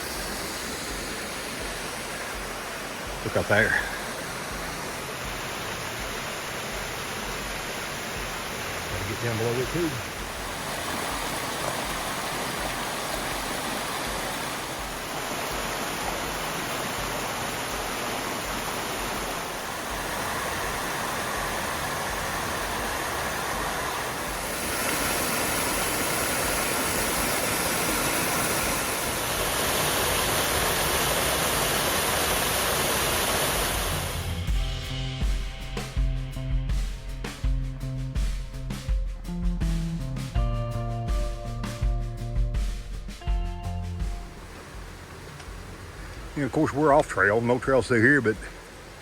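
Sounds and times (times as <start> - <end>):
water rushing down rock cascade: 0.0 - 34.4, 44.2 - 49.0.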